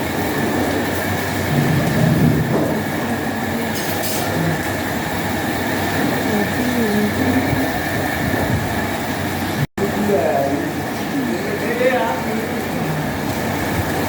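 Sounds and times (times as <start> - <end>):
faint voices: 6.0 - 8.0, 9.8 - 13.3.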